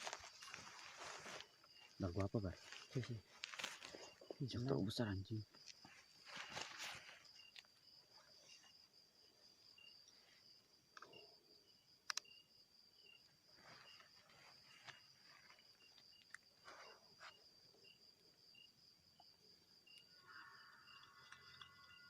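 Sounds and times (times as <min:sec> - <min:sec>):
soft rustling: 0:00.0 - 0:04.6, 0:05.5 - 0:08.9, 0:13.5 - 0:17.4
insects trilling: 0:00.0 - 0:22.0
short insect chirp: 0:00.0 - 0:22.0.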